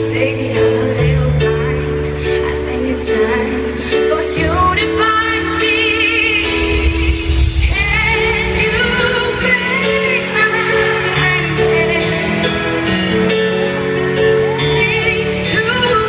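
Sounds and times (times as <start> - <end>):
woman singing with vibrato: 0.0 - 16.0
band accompaniment: 4.7 - 16.0.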